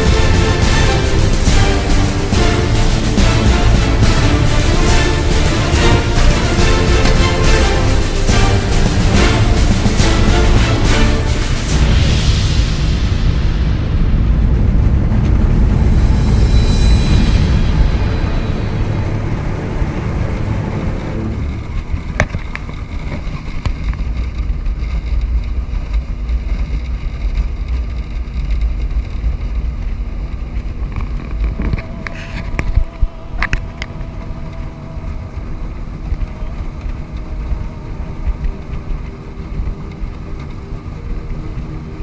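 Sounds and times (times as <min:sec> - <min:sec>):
background music: 0:00.0 - 0:23.3, 0:30.7 - 0:42.0
vehicle driving rumble: 0:00.0 - 0:42.0.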